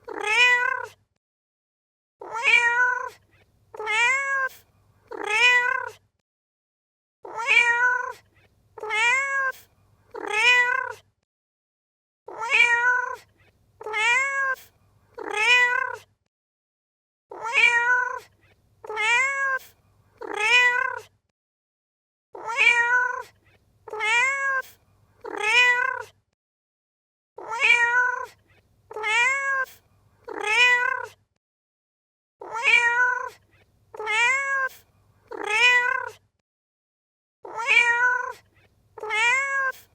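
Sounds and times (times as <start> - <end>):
cat meowing: 0.0 - 1.0, 2.2 - 6.0, 7.3 - 8.2, 8.8 - 11.0, 12.3 - 16.1, 17.3 - 21.1, 22.4 - 26.1, 27.4 - 31.2, 32.4 - 36.2, 37.5 - 39.9.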